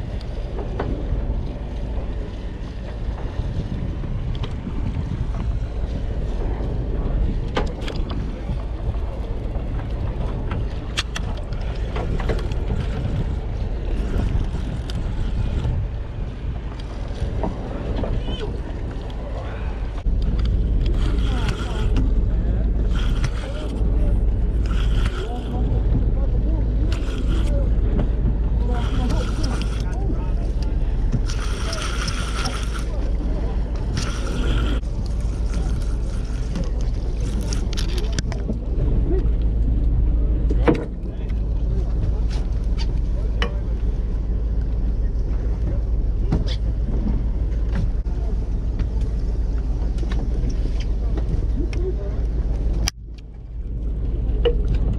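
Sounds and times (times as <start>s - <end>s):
boat engine rumbling: 0.0s - 54.9s
wind buffeting microphone: 0.0s - 54.9s.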